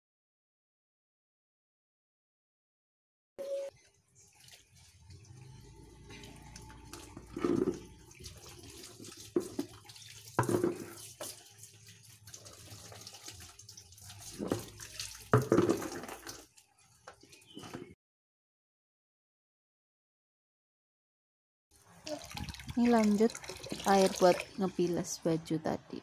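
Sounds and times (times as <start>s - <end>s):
water splashes: 3.9s - 17.7s, 21.8s - 25.0s
clothes scrubbed in water: 4.1s - 18.0s, 21.8s - 24.7s.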